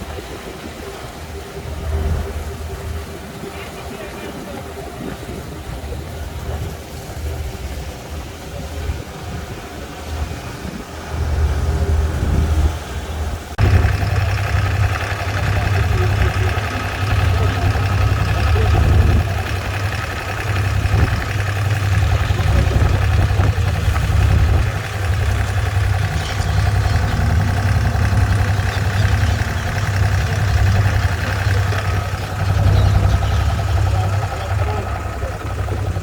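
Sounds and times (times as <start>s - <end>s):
boat engine droning: 0.0s - 36.0s.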